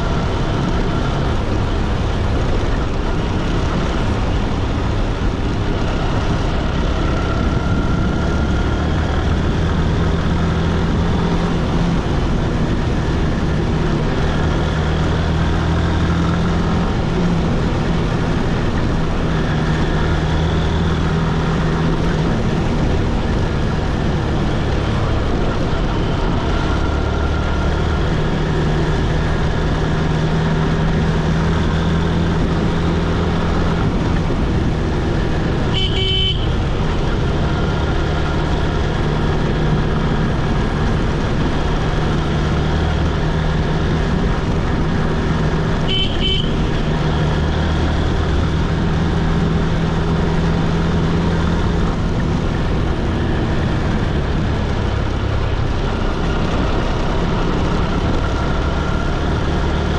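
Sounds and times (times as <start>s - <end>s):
motorcycle engine: 0.0s - 59.9s
wind noise: 0.0s - 59.9s
vehicle horn toot: 35.7s - 36.6s, 45.8s - 46.7s.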